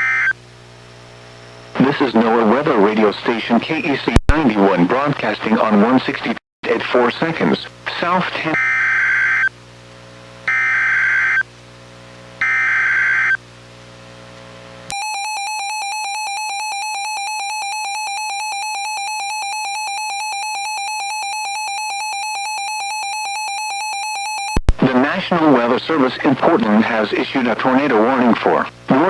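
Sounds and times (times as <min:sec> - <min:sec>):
harsh data squawks: 0:10.5 - 0:11.4.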